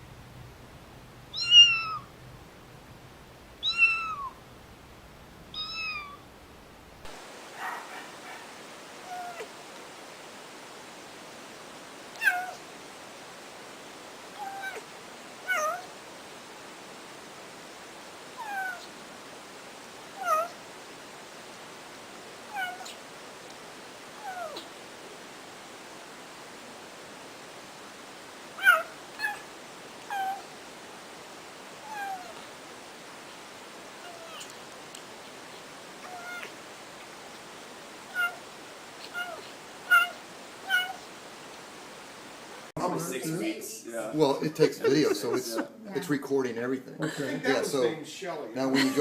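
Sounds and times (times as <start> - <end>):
steady background hiss: 0.0 - 49.0
cat meowing: 1.3 - 2.1, 3.6 - 4.4, 5.5 - 6.2, 9.0 - 9.5, 12.2 - 12.6, 14.4 - 15.9, 18.4 - 18.9, 20.2 - 20.6, 22.5 - 23.0, 24.2 - 24.7, 28.6 - 30.5, 31.8 - 32.5, 34.0 - 34.6, 36.0 - 36.6, 38.1 - 41.1.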